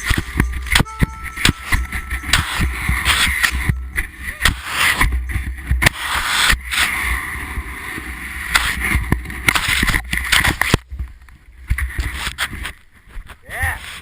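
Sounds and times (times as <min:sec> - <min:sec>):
snowboard scraping over snow: 0:02.3 - 0:10.7.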